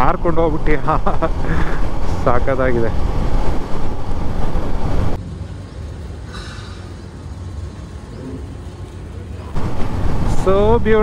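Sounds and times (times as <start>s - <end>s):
wind rushing over microphone: 0.0s - 5.2s, 9.6s - 11.0s
low motorcycle engine rumble: 0.0s - 11.0s.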